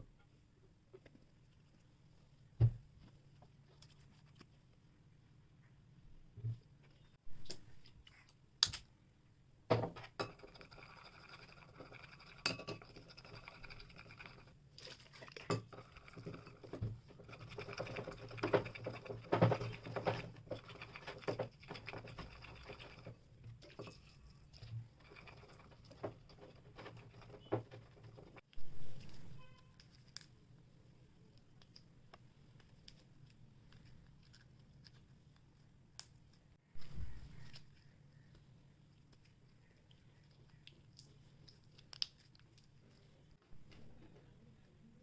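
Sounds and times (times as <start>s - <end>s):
slime stirring and scraping: 10.0s - 30.4s, 31.2s - 35.8s.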